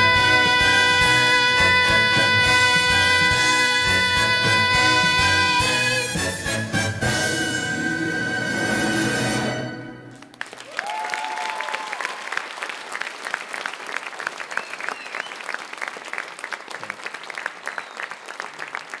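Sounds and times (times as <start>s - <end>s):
audience clapping: 10.1s - 19.0s
audience cheering: 10.4s - 16.0s.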